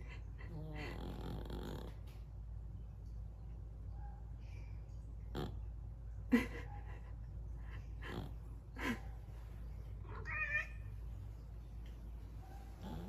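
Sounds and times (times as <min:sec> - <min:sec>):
cat snoring: 0:00.5 - 0:01.9, 0:08.1 - 0:08.3.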